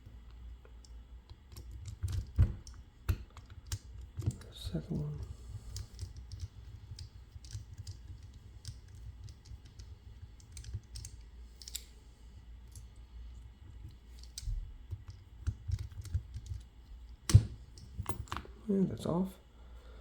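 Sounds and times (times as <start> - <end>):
metal lock parts clicking: 10.4 - 11.9, 15.4 - 18.5.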